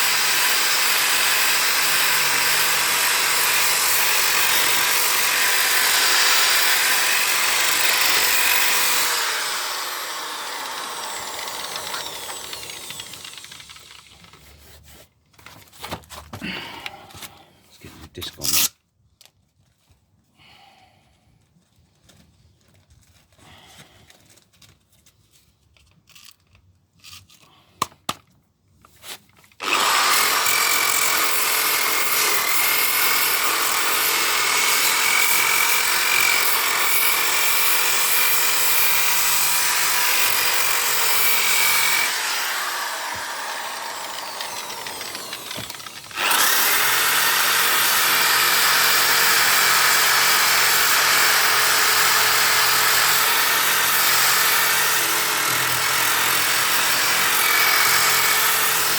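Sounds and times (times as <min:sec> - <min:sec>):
power sander whining: 0:00.0 - 0:14.4, 0:29.6 - 0:58.9.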